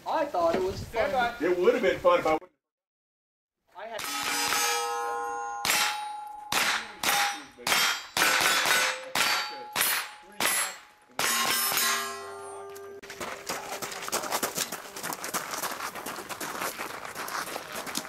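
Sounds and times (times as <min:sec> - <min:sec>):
steel plate ringing: 0:04.0 - 0:13.3
gunshots: 0:05.6 - 0:12.2.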